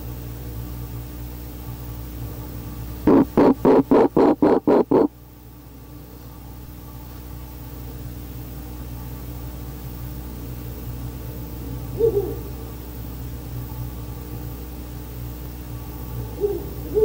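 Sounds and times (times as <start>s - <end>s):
steady low hum: 0.0s - 17.0s
owl hooting: 11.9s - 12.6s, 16.2s - 17.0s.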